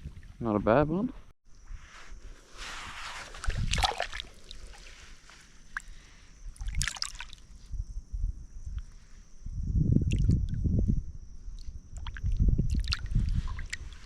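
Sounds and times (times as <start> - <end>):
water splashing and dribbling: 3.2 - 7.6, 10.0 - 10.6, 11.5 - 14.0.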